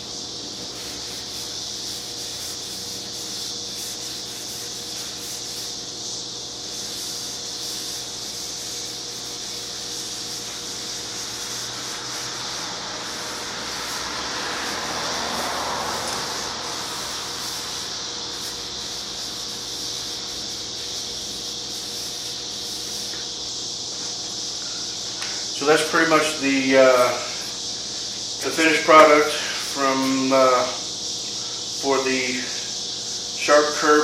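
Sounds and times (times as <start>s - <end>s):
cloth rubbing on exhaust pipes: 0.0s - 5.8s, 6.8s - 24.8s
steady background hum: 0.0s - 34.0s.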